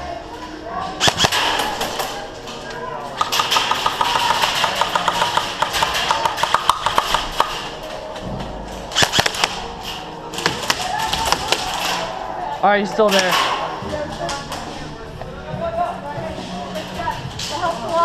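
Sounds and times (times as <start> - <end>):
airsoft gun popping shots: 1.0 - 1.9, 3.2 - 7.7, 9.0 - 9.6.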